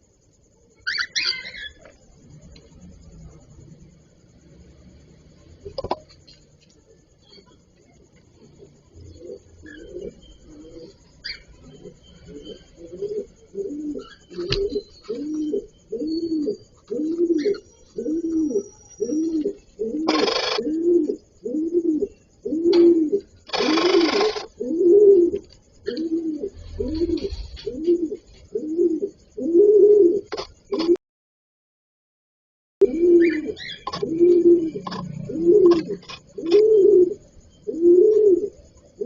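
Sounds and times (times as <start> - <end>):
dove-like bird cooing: 8.3 - 31.0, 32.8 - 39.0.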